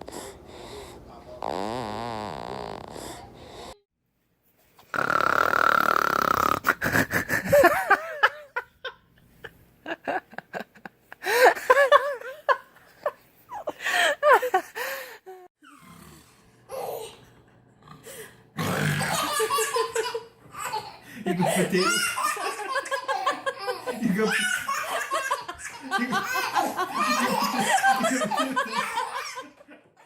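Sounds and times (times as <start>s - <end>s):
loud breathy noises: 0.0s - 1.4s, 2.5s - 3.8s
baby laughing: 19.0s - 29.6s.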